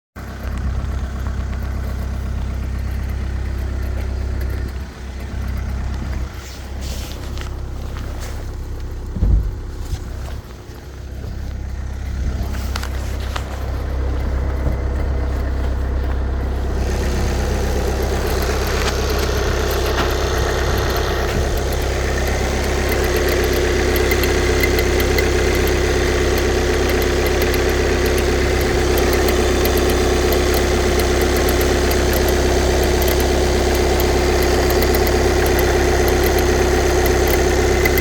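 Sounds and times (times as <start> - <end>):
diesel engine running: 0.2 - 38.0
engine clicking: 0.2 - 38.0
loud thump: 9.1 - 10.0.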